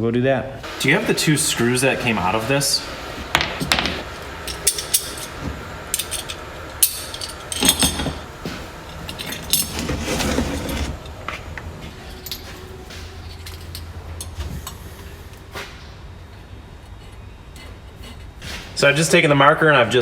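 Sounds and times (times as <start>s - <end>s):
small metal parts clinking: 3.6s - 8.2s, 8.9s - 10.0s, 13.2s - 14.4s.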